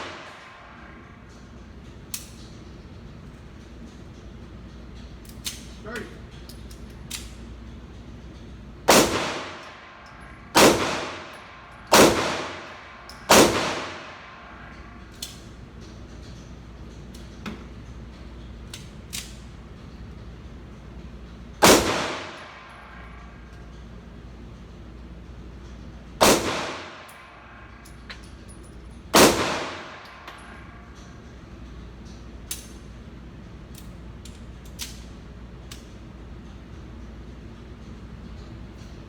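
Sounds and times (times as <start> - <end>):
pistol shots with ringing tail: 8.9 - 9.8, 10.5 - 14.6, 21.6 - 23.0, 26.2 - 27.2, 29.1 - 30.7.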